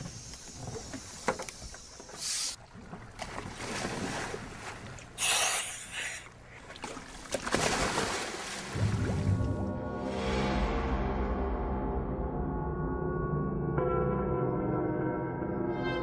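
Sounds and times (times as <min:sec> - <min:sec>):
water splashing and sloshing: 0:00.0 - 0:10.4
low music: 0:08.8 - 0:16.0.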